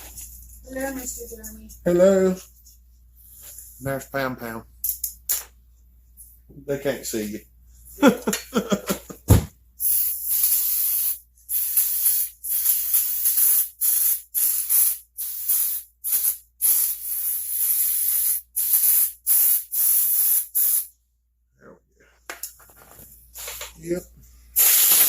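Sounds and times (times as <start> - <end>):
hissing spray bursts: 9.8 - 20.9, 24.5 - 25.0.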